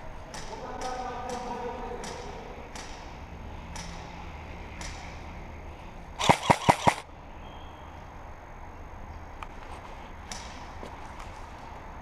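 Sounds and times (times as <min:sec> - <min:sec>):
airsoft gun shots: 0:06.2 - 0:07.0.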